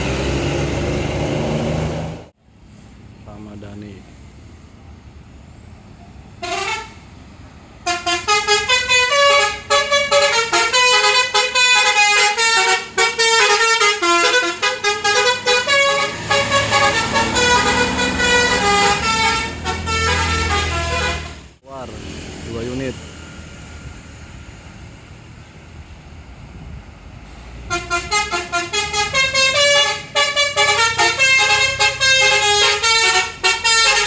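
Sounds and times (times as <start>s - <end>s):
bus engine rumble: 0.0s - 34.0s
musical bus horn melody: 6.4s - 7.0s, 7.8s - 21.6s, 27.7s - 34.0s.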